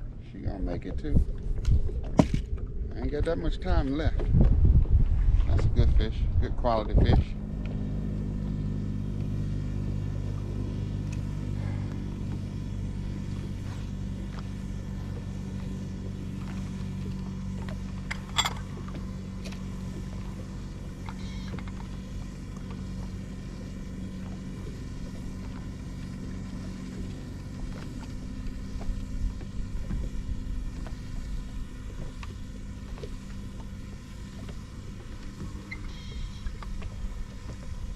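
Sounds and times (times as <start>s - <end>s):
boat motor humming: 0.0s - 37.9s.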